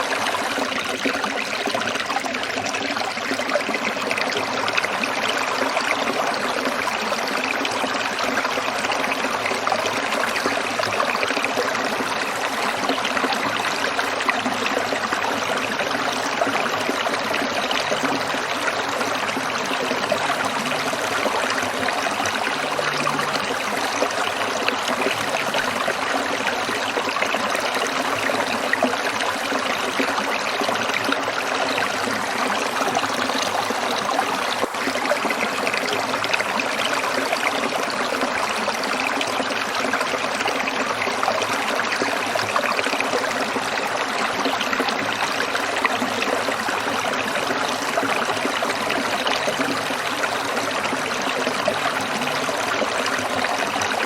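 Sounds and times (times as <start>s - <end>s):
stream water splashing over rocks: 0.0s - 54.0s.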